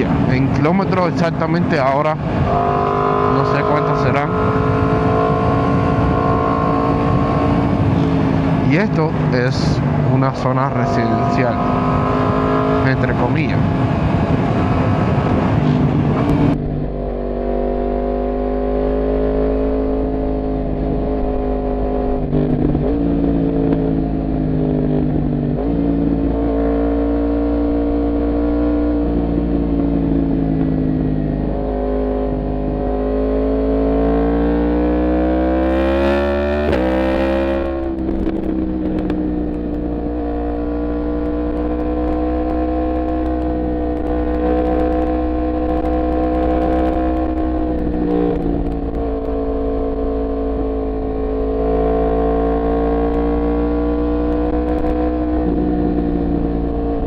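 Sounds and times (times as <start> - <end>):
motorcycle engine running: 0.0 - 57.0.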